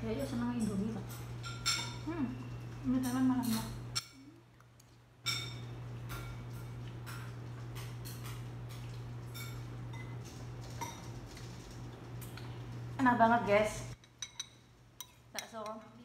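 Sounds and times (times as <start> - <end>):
spoon clinking against bowl: 5.3 - 7.2, 14.0 - 15.9.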